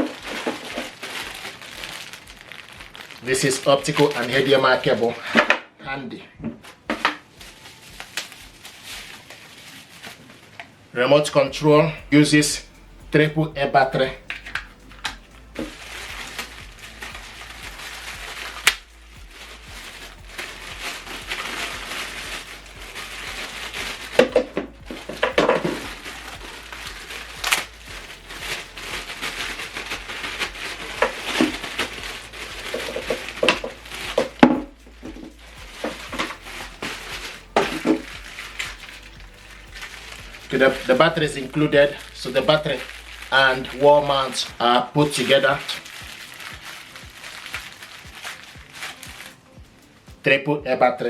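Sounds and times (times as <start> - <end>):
small items knocking down: 0.0 - 5.6, 28.5 - 46.8
plastic packaging crinkling: 0.0 - 5.8, 6.6 - 50.0.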